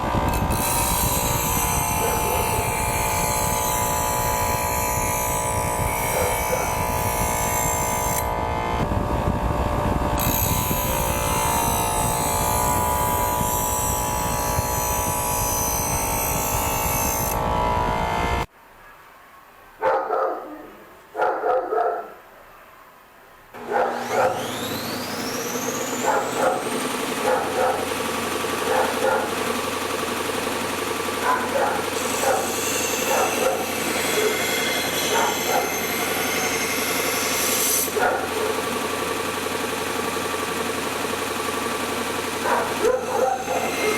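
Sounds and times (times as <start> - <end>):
motor spinning up with whine: 0.0 - 18.5, 23.6 - 43.9
power tool running: 0.0 - 18.5, 23.6 - 43.9
dog barking: 6.1 - 6.8, 19.8 - 22.2, 23.6 - 24.4, 26.0 - 27.9, 28.6 - 29.4, 31.2 - 34.4, 35.1 - 35.7, 38.0 - 38.6, 42.4 - 43.9.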